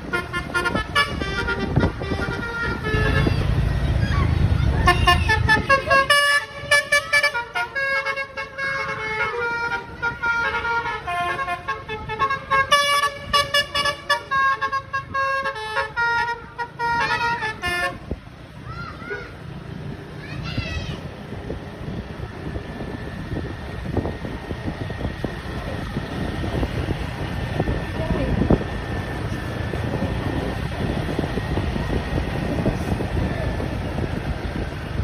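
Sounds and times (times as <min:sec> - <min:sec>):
multi-tone bus horn tune: 0:00.0 - 0:03.9, 0:04.6 - 0:18.3.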